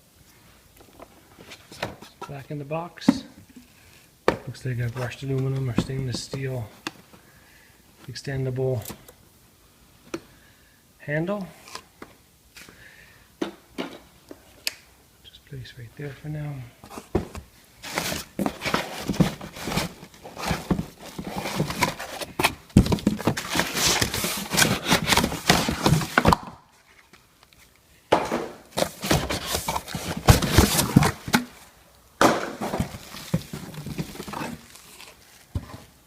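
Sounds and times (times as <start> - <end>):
cardboard box and packaging rustling: 3.2 - 6.8, 16.8 - 36.0.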